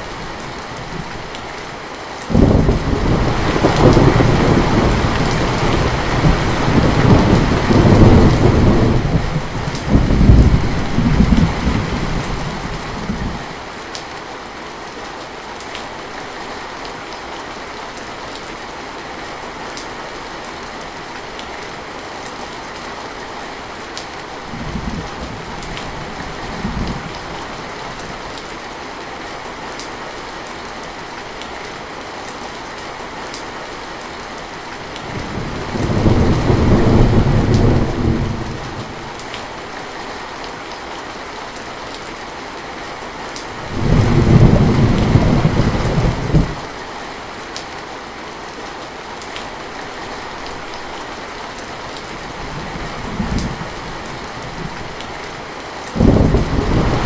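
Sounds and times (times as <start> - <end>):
heavy rain falling: 0.0 - 57.0
thunder rumbling: 2.3 - 13.4, 35.1 - 39.3, 43.6 - 46.7, 56.0 - 57.0.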